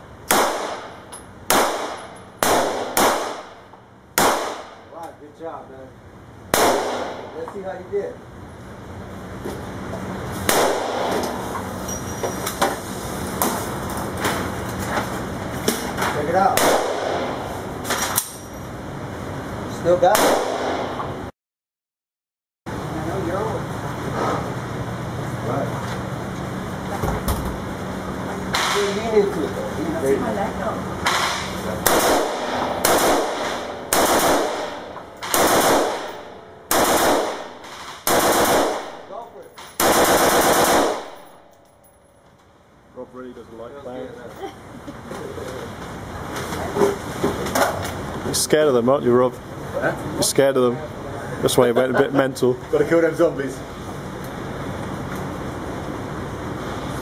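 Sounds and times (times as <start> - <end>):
steady low hum: 0.0 - 21.3, 22.7 - 57.0
gunshots: 0.3 - 3.6, 4.2 - 4.8, 6.5 - 7.4, 10.5 - 11.4, 16.5 - 17.5, 20.1 - 21.0, 31.0 - 39.2, 39.8 - 41.4
automatic gunfire bursts: 1.5 - 3.5, 31.8 - 39.1, 39.8 - 41.3.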